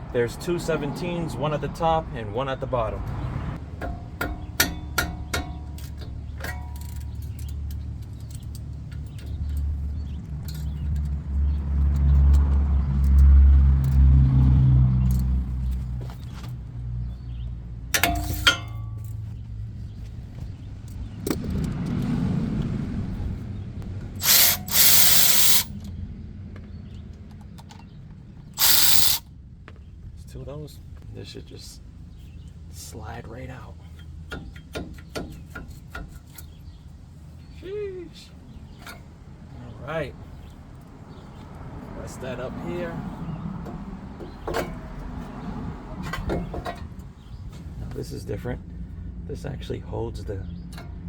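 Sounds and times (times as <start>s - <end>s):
tools clicking and knocking: 18.0s - 18.9s, 24.0s - 25.8s, 28.6s - 29.2s
impact wrench bursts: 24.2s - 25.8s, 28.6s - 29.2s.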